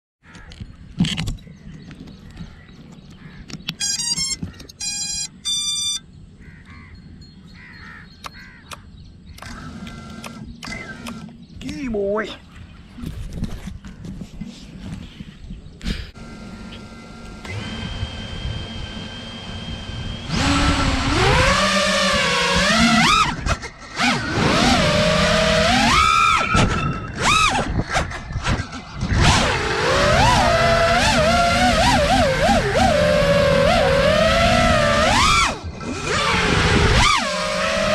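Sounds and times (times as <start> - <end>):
motor power-up tones: 3.8 - 6.0, 9.4 - 11.4, 16.2 - 37.9.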